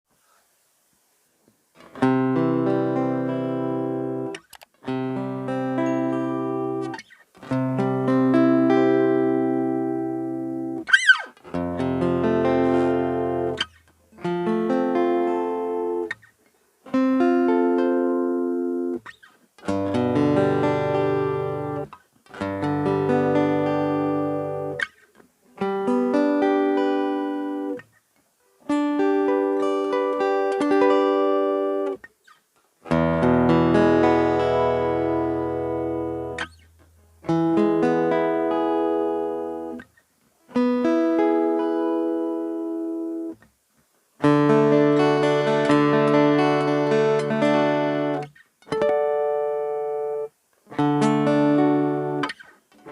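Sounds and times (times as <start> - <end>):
acoustic guitar chords: 1.8 - 16.3, 16.9 - 27.9, 28.5 - 32.1, 32.8 - 43.6, 44.2 - 52.9
guitar string squeak: 10.8 - 11.4.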